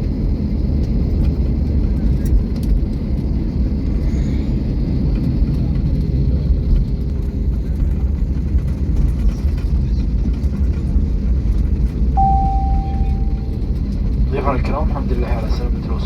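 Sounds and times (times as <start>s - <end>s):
airliner cabin rumble: 0.2s - 16.0s
cabin chime: 12.2s - 13.6s.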